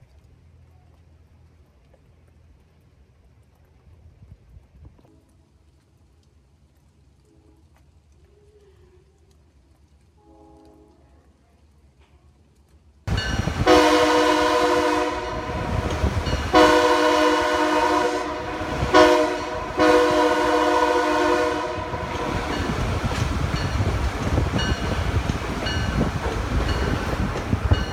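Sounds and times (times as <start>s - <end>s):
train horn blasts: 10.2s - 11.0s, 13.4s - 23.9s
wheels clicking over rail joints: 12.0s - 27.9s
train rumble: 13.1s - 27.9s.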